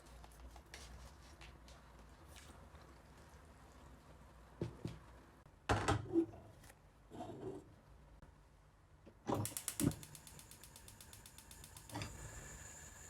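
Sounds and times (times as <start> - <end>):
sharp ratchet-like clicks: 9.4 - 12.1.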